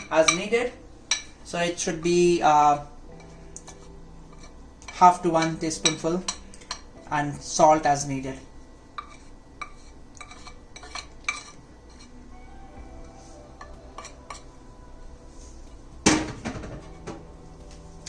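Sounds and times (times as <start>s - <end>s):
faint background music: 0.0s - 18.0s
spoon clinking on bowls: 3.2s - 6.9s, 9.0s - 12.1s, 13.6s - 14.5s.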